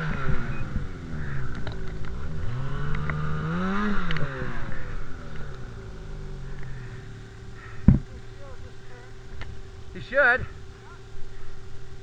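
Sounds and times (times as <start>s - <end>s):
snowmobile engine revving: 0.0s - 9.2s.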